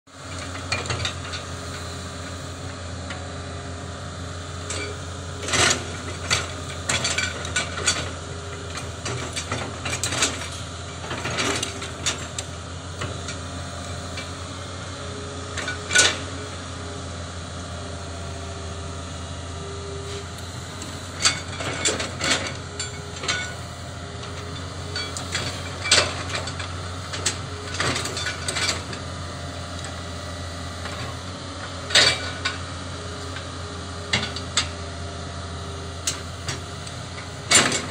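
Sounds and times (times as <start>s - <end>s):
excavator engine running: 0.1s - 37.9s
excavator bucket clanking: 4.6s - 13.4s, 21.1s - 23.6s, 24.2s - 29.1s, 31.8s - 32.7s, 36.0s - 37.9s.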